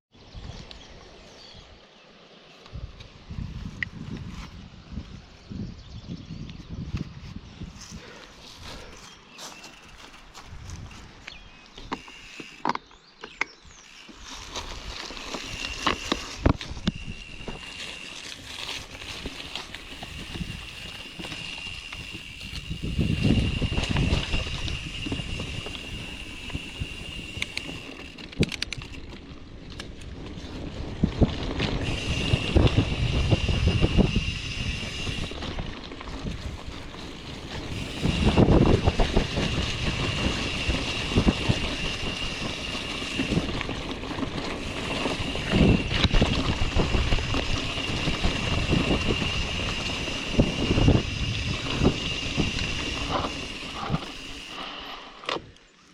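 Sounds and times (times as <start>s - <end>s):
wind buffeting microphone: 2.7s - 9.1s, 13.6s - 54.5s
bike rattling over bumps: 8.0s - 55.8s
thin high whine: 13.8s - 28.2s, 31.8s - 35.6s.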